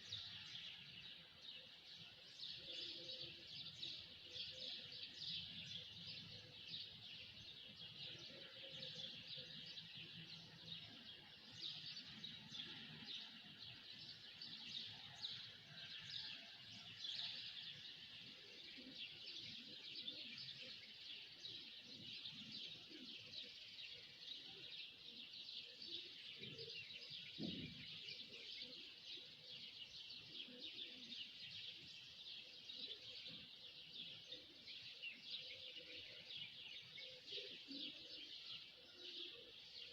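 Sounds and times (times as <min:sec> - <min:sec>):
small birds chirping: 0:16.9 - 0:39.9.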